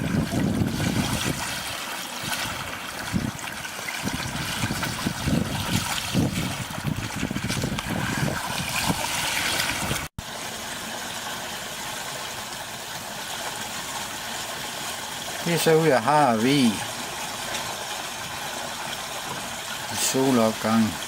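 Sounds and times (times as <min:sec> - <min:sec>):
water splashing along boat hull: 0:00.0 - 0:10.2, 0:16.9 - 0:21.0.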